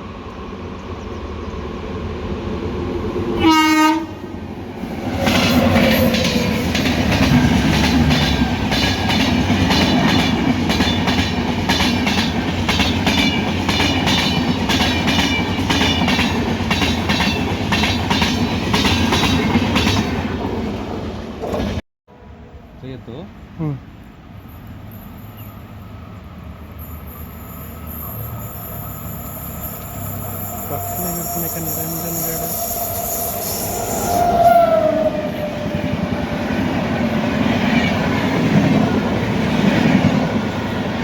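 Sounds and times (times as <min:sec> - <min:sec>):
train rumbling: 0:00.0 - 0:41.0
locomotive horn blast: 0:03.4 - 0:04.3
wheels clacking over rail joints: 0:05.2 - 0:20.5.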